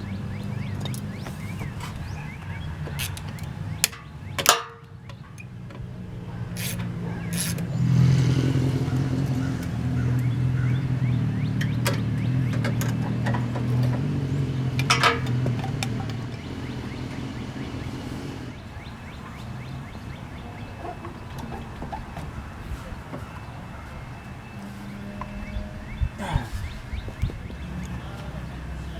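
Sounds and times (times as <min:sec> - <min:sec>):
metallic clicks and knocks: 0:02.8 - 0:05.9, 0:14.8 - 0:16.4.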